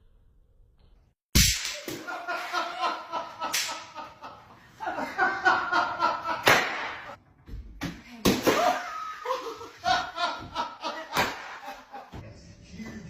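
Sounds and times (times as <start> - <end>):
sharp slapping smacks: 1.3 - 2.1, 3.5 - 3.9, 6.4 - 7.2, 11.1 - 11.7.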